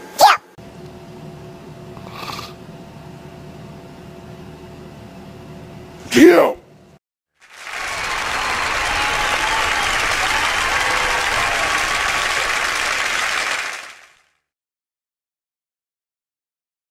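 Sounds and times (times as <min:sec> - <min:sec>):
crowd applauding: 0:07.4 - 0:14.4.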